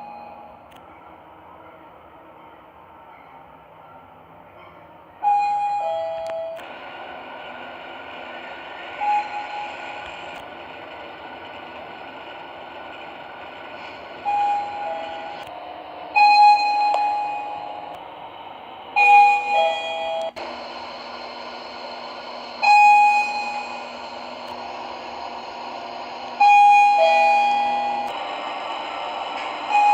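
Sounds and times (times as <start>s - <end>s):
elevator arrival chime: 0.0s - 0.7s, 5.2s - 6.6s, 8.9s - 10.3s, 14.2s - 15.5s, 16.1s - 17.9s, 18.9s - 29.9s
steady background hum: 0.0s - 29.9s.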